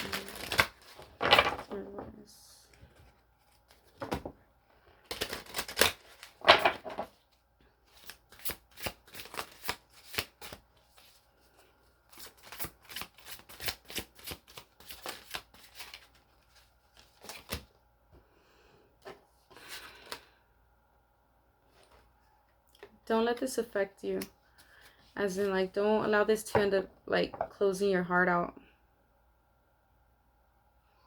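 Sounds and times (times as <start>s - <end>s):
cards being shuffled: 0.0s - 1.8s, 5.0s - 17.8s, 19.0s - 20.3s.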